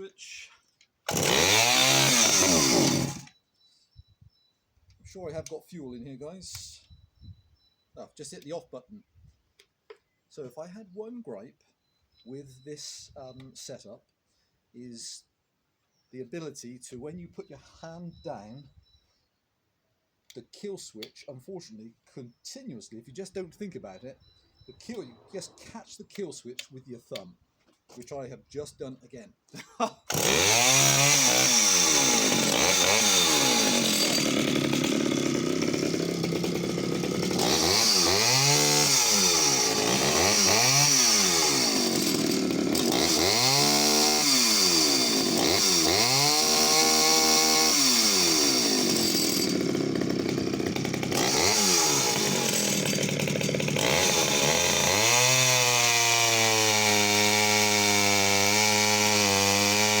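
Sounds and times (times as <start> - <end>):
chainsaw revving: 1.1 - 3.3, 30.1 - 60.0.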